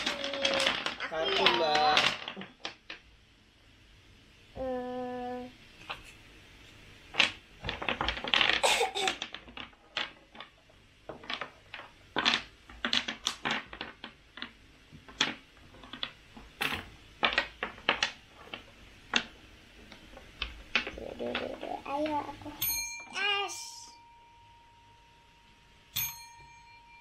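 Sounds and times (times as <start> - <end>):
plastic blocks clacking on table: 0.0 - 3.1, 7.1 - 22.6.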